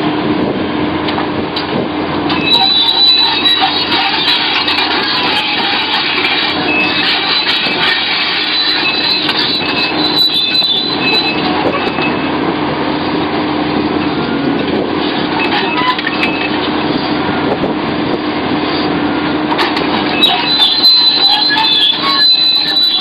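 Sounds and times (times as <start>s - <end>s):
excavator diesel engine humming: 0.0s - 23.0s
metallic scraping and squealing: 2.3s - 12.5s, 15.0s - 17.0s, 19.6s - 23.0s.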